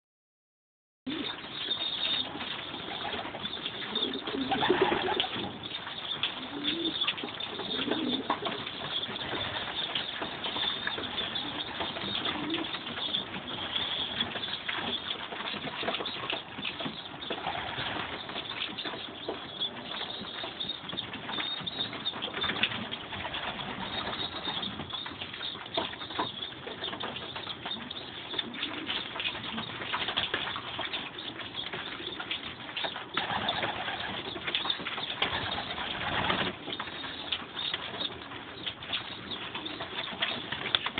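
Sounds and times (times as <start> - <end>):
pigeons cooing: 1.1 - 40.9
wings scuffling and fluttering: 1.1 - 40.9.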